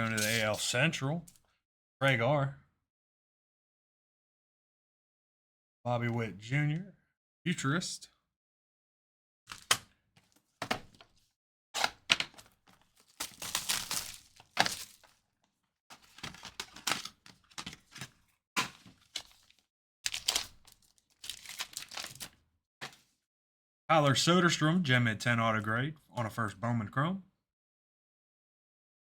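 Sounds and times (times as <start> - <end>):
packaging crinkling and tearing: 0.0 - 0.7, 11.9 - 15.2, 16.0 - 22.4
packaging clacks and thunks: 11.8 - 15.1, 15.9 - 19.4.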